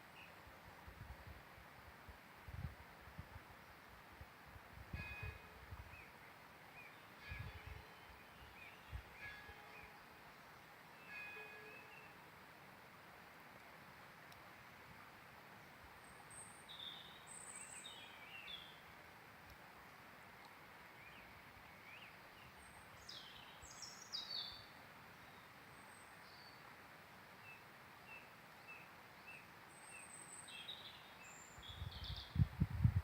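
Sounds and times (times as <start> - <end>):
songbirds chirping: 5.8 - 32.6
steady hiss: 12.0 - 31.6.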